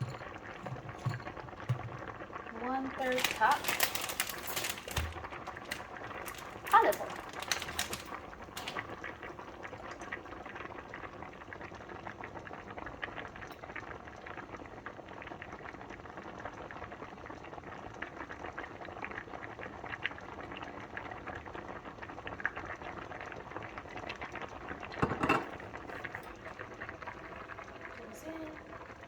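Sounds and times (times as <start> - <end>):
pot of water boiling: 0.0 - 29.0.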